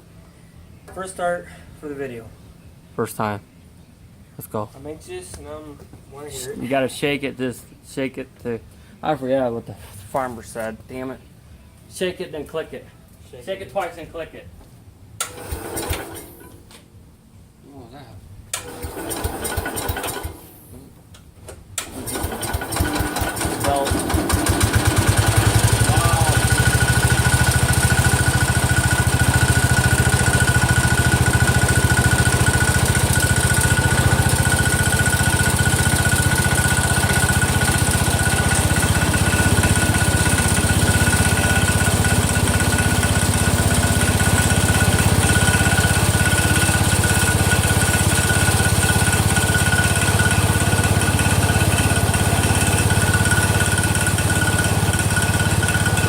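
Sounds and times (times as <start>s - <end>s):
small engine running: 18.6s - 20.5s, 21.8s - 56.0s.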